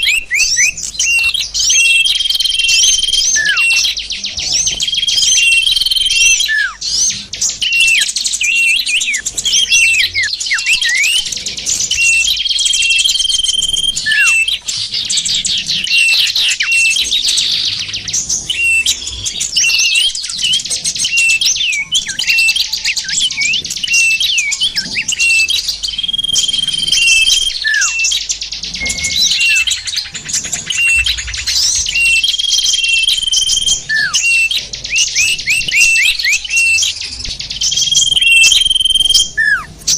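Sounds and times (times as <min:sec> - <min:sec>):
small birds chirping: 0:00.0 - 0:39.9
long even whistle: 0:30.8 - 0:35.1, 0:37.9 - 0:39.7.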